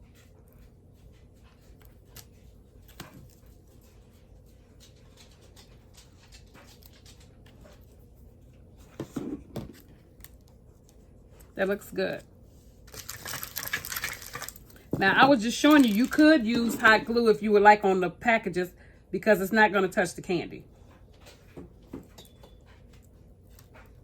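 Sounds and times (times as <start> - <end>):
cardboard and candy wrapper rustles: 12.6 - 17.1.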